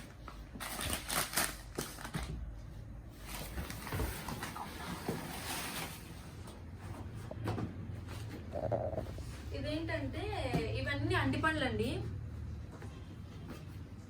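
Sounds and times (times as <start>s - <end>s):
packaging rustling and crinkling: 0.0s - 2.5s, 3.1s - 6.6s.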